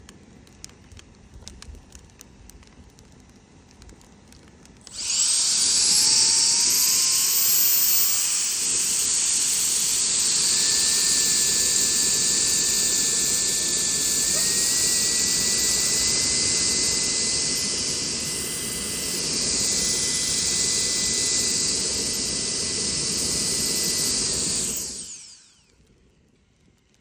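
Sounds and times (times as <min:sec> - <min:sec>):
heat gun fan whine and air rush: 0:04.8 - 0:25.9.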